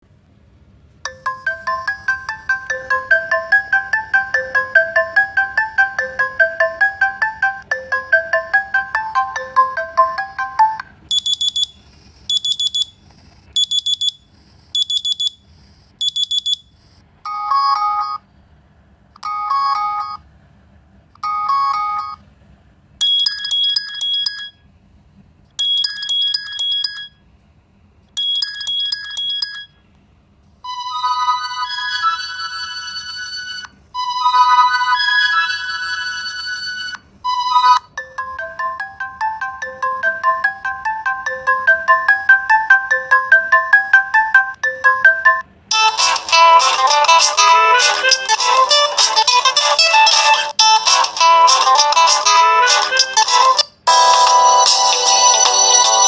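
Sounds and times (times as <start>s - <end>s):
looping melodic ringtone: 1.1s - 11.7s, 17.3s - 18.2s, 19.2s - 20.2s, 21.2s - 22.2s, 23.0s - 24.5s, 25.6s - 27.1s, 28.2s - 29.7s, 30.7s - 56.0s
chiming alarm: 1.1s - 11.8s, 37.3s - 46.0s, 53.9s - 56.0s
short electronic beeps: 11.1s - 13.0s, 16.0s - 16.7s.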